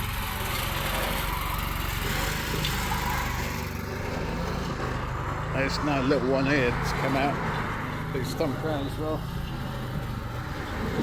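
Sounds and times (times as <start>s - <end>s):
engine running steadily: 0.0s - 11.0s.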